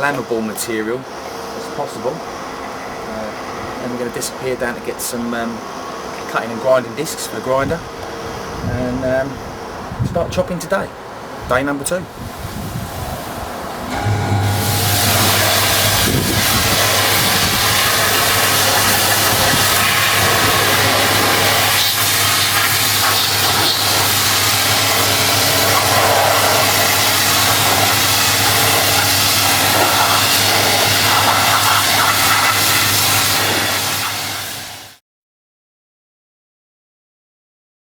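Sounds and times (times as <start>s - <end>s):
pressure washer motor hum: 13.8s - 33.8s
water jet hissing: 13.9s - 34.8s.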